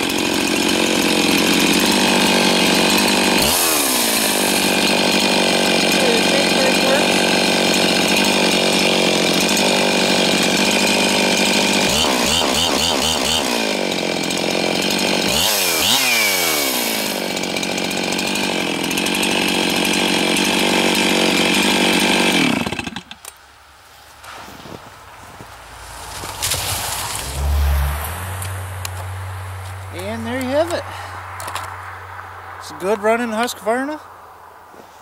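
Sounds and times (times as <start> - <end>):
chainsaw running at high revs: 0.0 - 23.3, 29.9 - 31.7.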